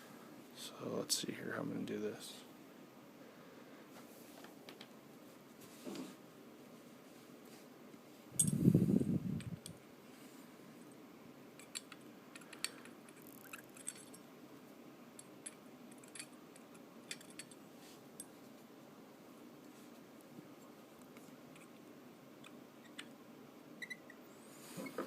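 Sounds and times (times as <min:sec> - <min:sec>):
metal tools clicking and clinking: 0:08.4 - 0:08.6, 0:11.6 - 0:14.3, 0:15.2 - 0:17.6.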